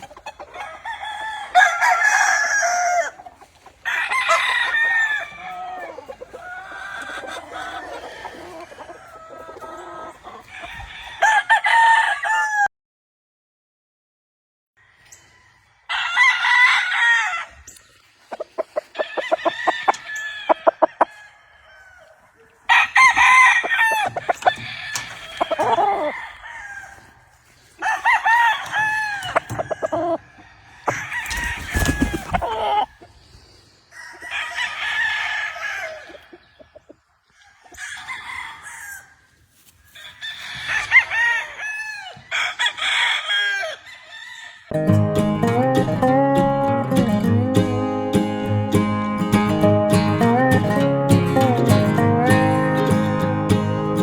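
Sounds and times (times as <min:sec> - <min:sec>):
rapid clucking: 0:00.0 - 0:00.7
roosters crowing: 0:00.0 - 0:12.7, 0:14.8 - 0:33.2, 0:33.8 - 0:54.0.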